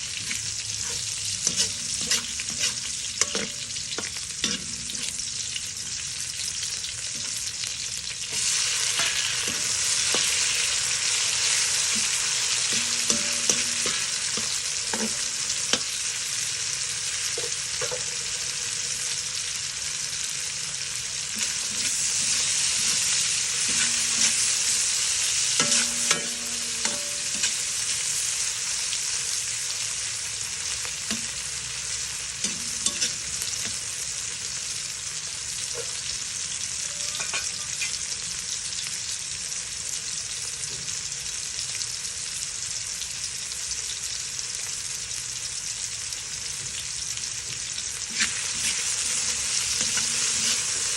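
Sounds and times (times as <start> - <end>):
food sizzling in a pan: 0.0 - 50.9
utensil scraping metal pan: 0.2 - 5.3, 8.3 - 15.9, 21.4 - 28.1, 32.4 - 33.8, 48.1 - 50.9.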